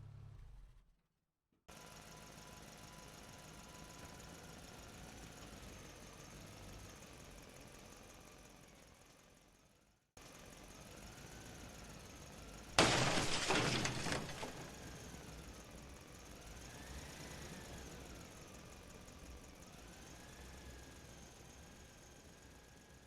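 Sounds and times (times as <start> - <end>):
shattering crash: 12.8 - 14.9.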